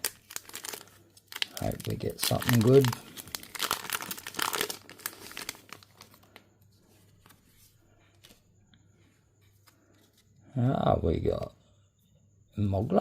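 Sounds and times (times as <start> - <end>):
foil wrapper crinkling and tearing: 0.0 - 6.4.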